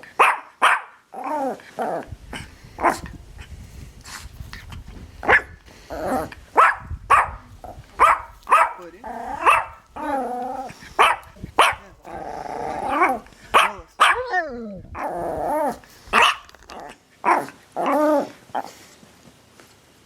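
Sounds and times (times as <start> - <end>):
dog barking: 0.0 - 1.0, 2.4 - 3.2, 5.2 - 5.6, 6.5 - 14.4, 15.6 - 16.5, 17.2 - 18.0
dog howling: 8.0 - 16.9.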